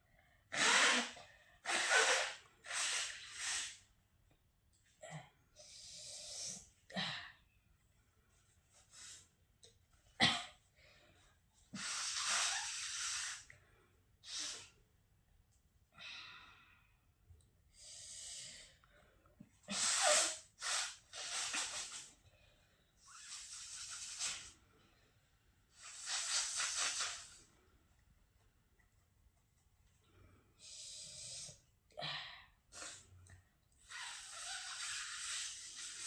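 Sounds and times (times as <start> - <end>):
person blowing nose: 0.5 - 3.9, 11.7 - 13.5, 19.7 - 22.2, 23.0 - 24.6, 25.7 - 27.5, 33.8 - 36.0.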